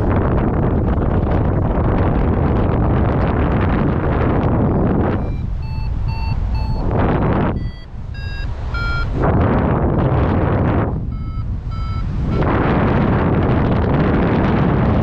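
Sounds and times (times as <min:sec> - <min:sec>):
wind noise on microphone: 0:00.0 - 0:15.0
variometer beeping: 0:03.1 - 0:13.9.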